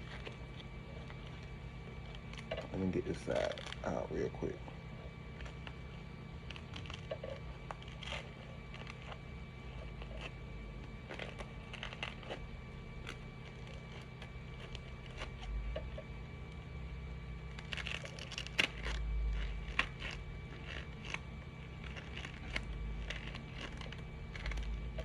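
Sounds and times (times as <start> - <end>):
scraping creaking and clicking: 0.0 - 4.0, 5.3 - 16.6, 17.5 - 25.0
steady low hum: 0.0 - 25.0.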